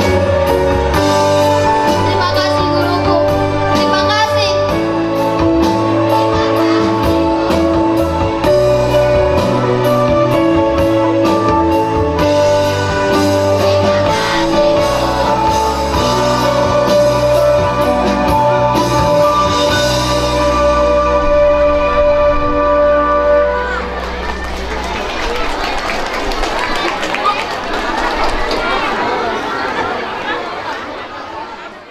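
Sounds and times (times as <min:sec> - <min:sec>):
steady drum beat: 0:00.0 - 0:20.5
guitar: 0:00.0 - 0:24.8.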